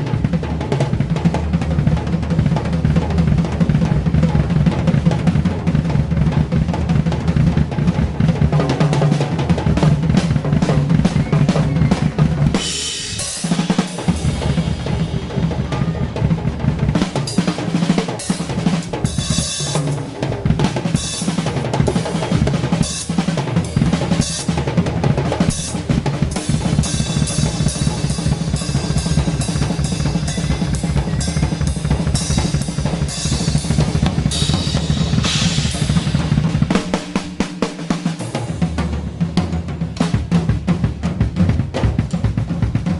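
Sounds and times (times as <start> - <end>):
fast bass drum: 0.0 - 42.9
snare drum rolls: 0.0 - 42.9
cymbal crashes: 12.6 - 17.6, 26.3 - 37.6.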